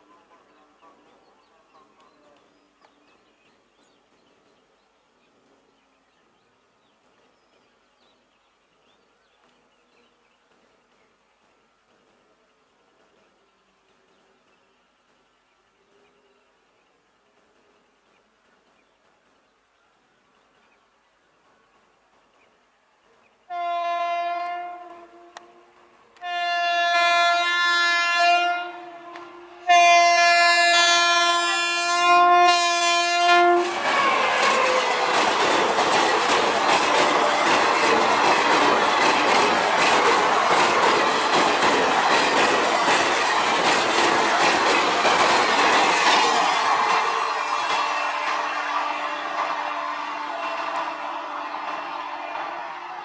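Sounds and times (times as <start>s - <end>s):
train coaches rushing past: 20.3s - 53.0s
locomotive horn blasts: 23.5s - 35.1s, 47.6s - 52.9s
wheels clacking over rail joints: 33.5s - 50.9s.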